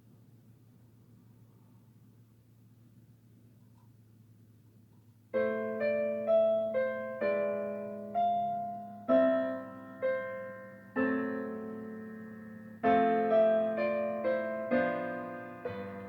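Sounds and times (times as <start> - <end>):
piano chords: 5.3 - 16.0.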